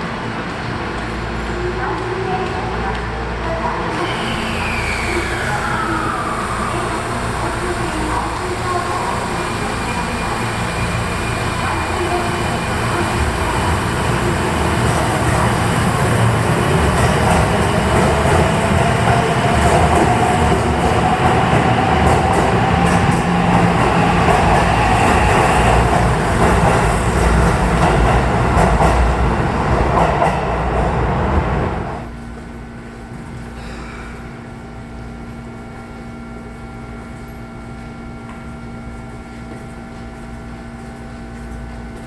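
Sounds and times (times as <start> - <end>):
train wheels running on rails: 0.0 - 32.5.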